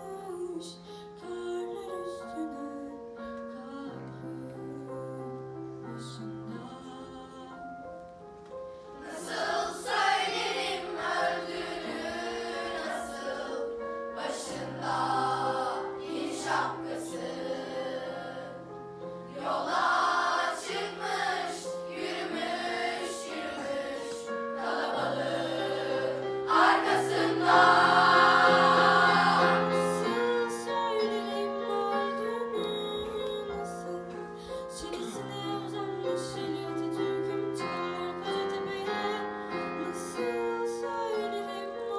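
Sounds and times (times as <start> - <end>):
piano accompaniment: 0.0 - 41.9
choir singing mournful song: 9.0 - 41.9.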